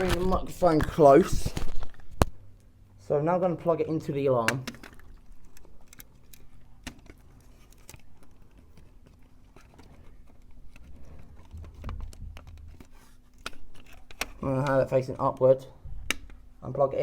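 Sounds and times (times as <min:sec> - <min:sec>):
wires and connector clicking: 0:04.4 - 0:16.5.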